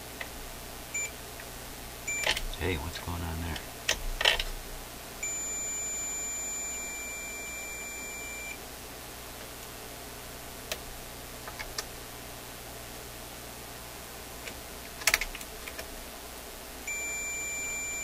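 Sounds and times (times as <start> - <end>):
multimeter continuity beep: 2.1 - 2.8, 5.2 - 8.6, 16.9 - 18.0.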